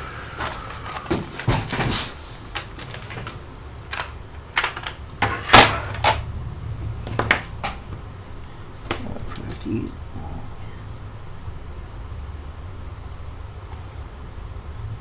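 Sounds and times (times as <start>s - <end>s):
hand tools clicking and clattering: 0.0s - 6.3s.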